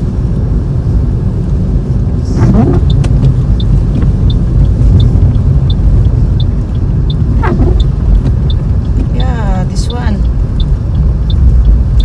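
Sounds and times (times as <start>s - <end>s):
car engine and tyres rumbling: 0.0s - 12.0s
high ticking: 2.5s - 12.0s.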